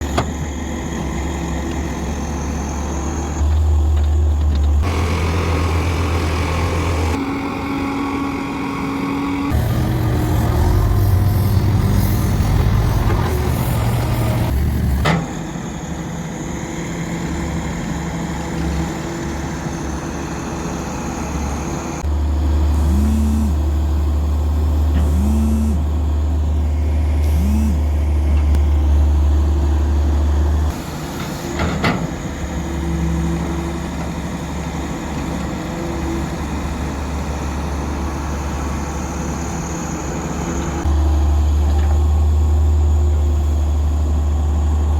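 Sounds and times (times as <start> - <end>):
diesel engines droning: 0.0 - 44.9
rising and falling whines: 4.8 - 14.8, 26.6 - 29.4.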